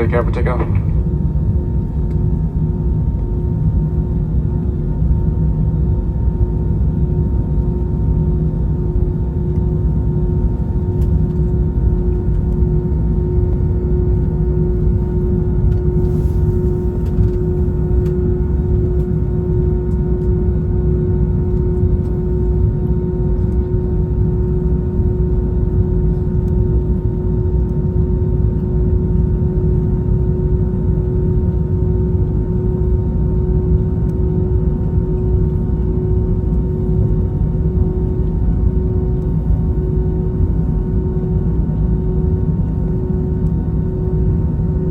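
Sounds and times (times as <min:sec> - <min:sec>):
engine and air system hum: 0:00.0 - 0:01.6, 0:14.2 - 0:20.3
airliner cabin rumble: 0:00.0 - 0:44.9.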